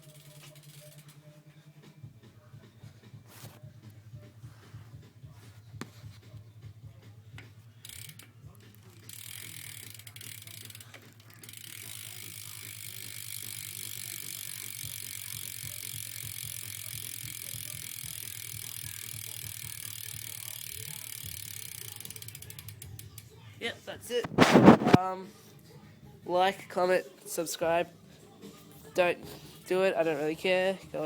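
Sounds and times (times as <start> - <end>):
bicycle hub ratcheting buzz: 0.0 - 1.3, 7.3 - 23.5.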